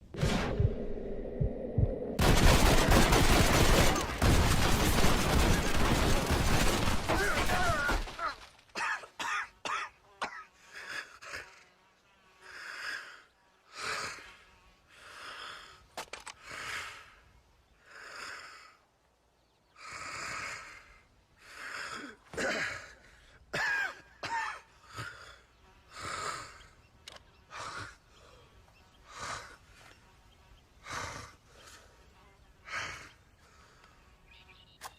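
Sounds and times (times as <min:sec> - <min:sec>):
person grunting in pain: 0:07.1 - 0:08.4
person coughing: 0:07.2 - 0:10.5, 0:22.0 - 0:24.7.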